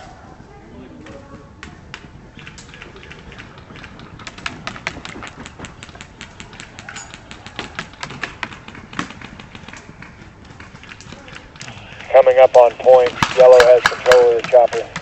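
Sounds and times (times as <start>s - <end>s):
airsoft guns firing: 12.3s - 14.8s.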